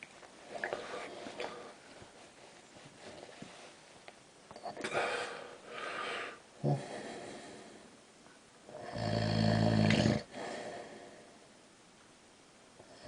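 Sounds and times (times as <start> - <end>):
breathy breaths: 0.4 - 2.3, 4.8 - 8.0, 10.2 - 11.6
man snoring: 8.7 - 10.8.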